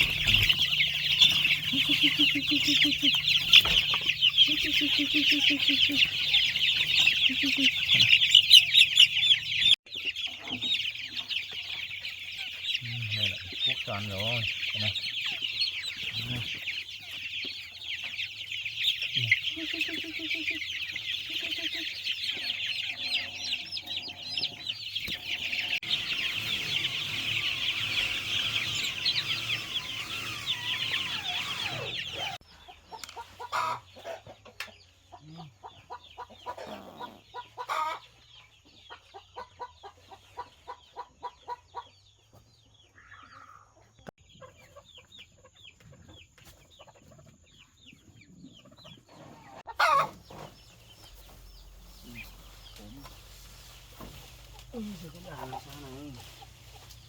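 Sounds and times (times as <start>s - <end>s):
loud chicken call: 0.0s - 9.8s, 19.0s - 32.4s, 49.3s - 50.2s
high chirping chorus: 0.0s - 34.3s, 49.8s - 57.0s
chickens clucking: 0.0s - 57.0s.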